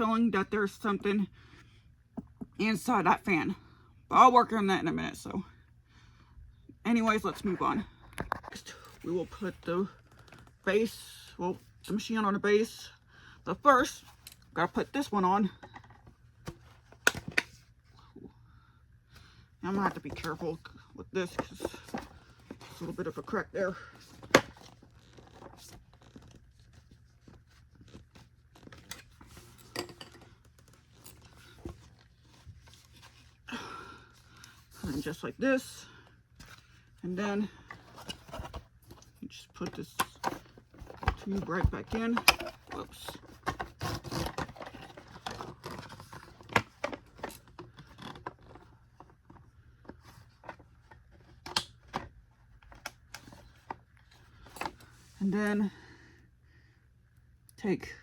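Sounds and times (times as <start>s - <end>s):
plastic parts clicking and rustling: 24.0s - 33.2s, 37.7s - 54.9s.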